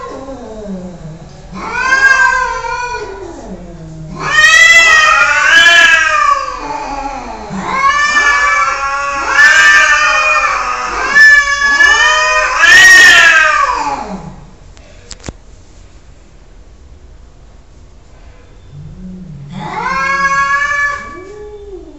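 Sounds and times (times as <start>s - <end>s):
cat yowling: 0.0s - 14.4s, 19.5s - 21.9s.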